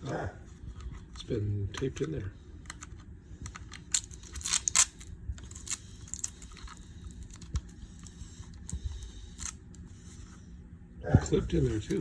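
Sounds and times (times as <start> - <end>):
packing tape tearing: 3.6 - 8.7.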